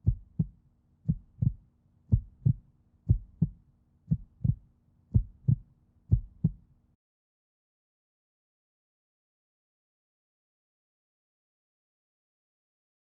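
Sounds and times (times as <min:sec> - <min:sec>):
heartbeat thumps: 0:00.0 - 0:06.6.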